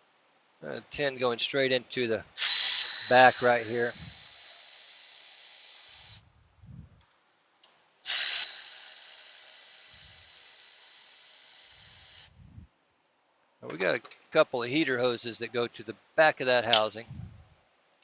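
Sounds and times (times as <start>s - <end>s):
steady hiss with high whine: 0.0s - 6.4s.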